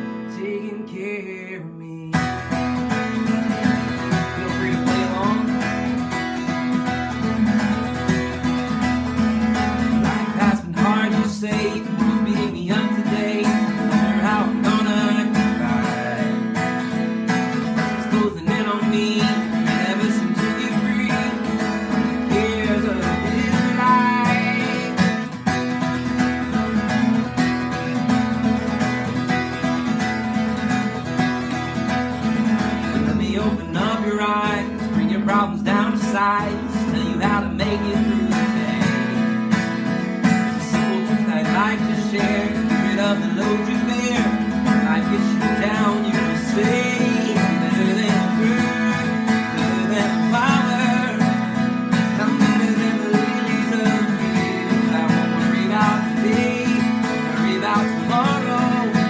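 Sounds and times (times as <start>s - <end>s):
acoustic guitar playing: 0.0s - 59.0s.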